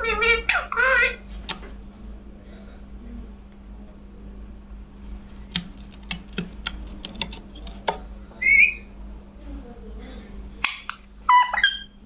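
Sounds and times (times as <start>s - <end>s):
sharp clicks and taps: 5.5s - 8.0s
parakeet whistling call: 8.4s - 8.9s, 10.7s - 12.0s.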